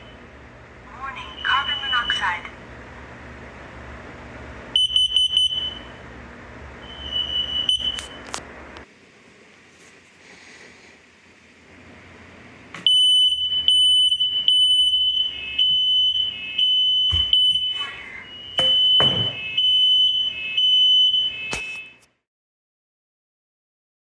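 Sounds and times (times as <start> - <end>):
smoke alarms beeping: 1.2 - 2.4, 4.7 - 6.0, 6.8 - 8.4, 12.8 - 22.1.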